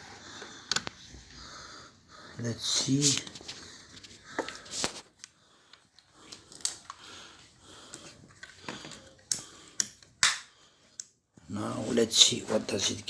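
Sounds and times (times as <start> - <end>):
quiet rustling: 11.3 - 13.0.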